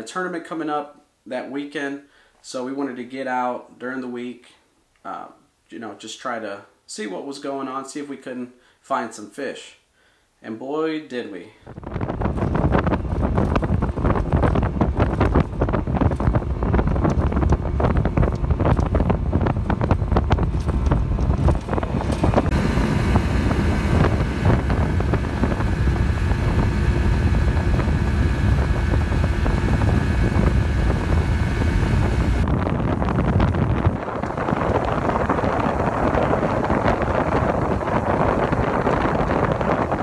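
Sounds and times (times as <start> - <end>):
wind buffeting microphone: 11.7 - 40.0.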